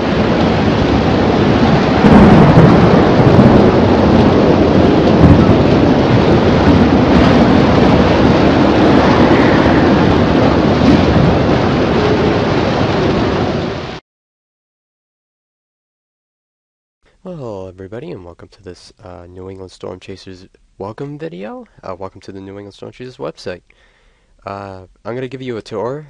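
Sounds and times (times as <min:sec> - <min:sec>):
wind rushing with low rumble: 0:00.0 - 0:14.0.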